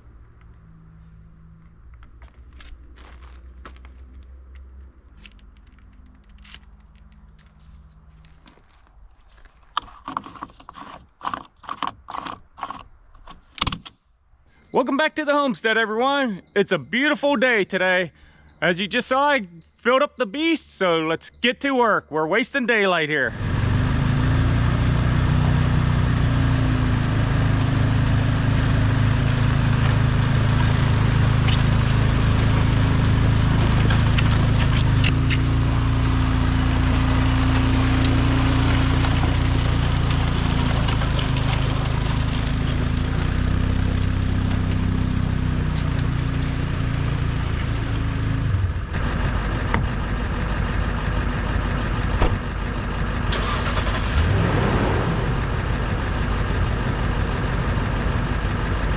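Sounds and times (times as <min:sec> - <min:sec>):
large engine running: 0:23.2 - 0:58.9.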